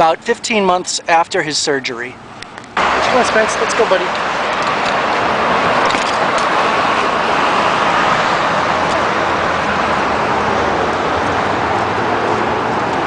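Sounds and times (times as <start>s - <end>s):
highway traffic: 0.0s - 13.0s.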